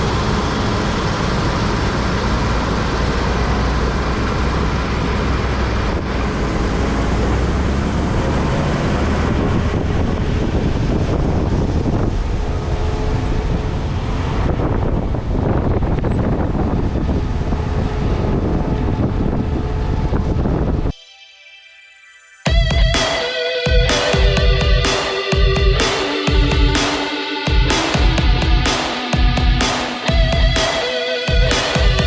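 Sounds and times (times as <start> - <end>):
diesel farm machine running: 0.0 - 20.9
wind on microphone: 5.7 - 20.9.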